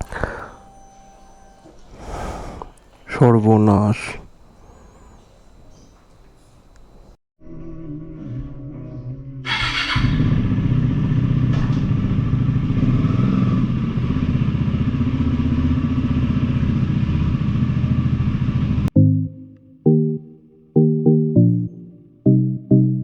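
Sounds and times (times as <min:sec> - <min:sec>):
motorcycle engine idling: 0:10.0 - 0:18.9.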